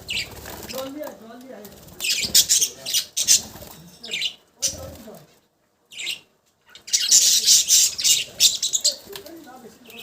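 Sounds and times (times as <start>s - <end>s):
budgerigars chattering and squawking: 0.1s - 0.9s, 2.0s - 4.9s, 5.9s - 9.1s.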